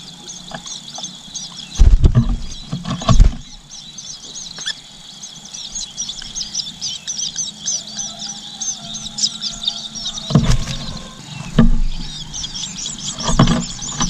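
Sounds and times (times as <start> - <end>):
nestling birds chirping: 0.0 - 14.0
low rustling thump: 1.8 - 3.5.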